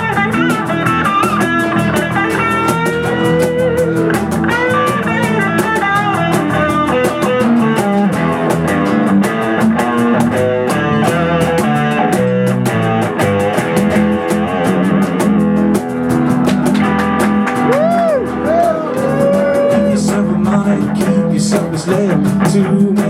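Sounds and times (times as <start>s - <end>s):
lead guitar bending notes: 0.0s - 22.9s
drum kit steady beat: 0.0s - 23.0s.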